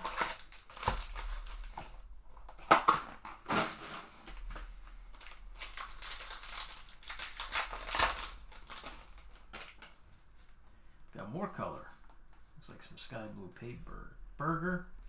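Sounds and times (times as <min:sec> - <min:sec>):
foil wrappers crinkling and tearing: 0:00.0 - 0:10.6.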